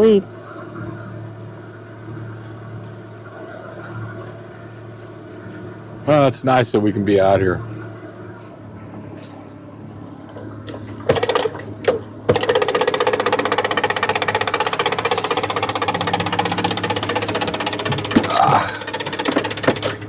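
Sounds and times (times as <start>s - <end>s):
low engine hum: 0.0s - 20.0s
motor-driven mechanism chattering: 10.2s - 20.0s.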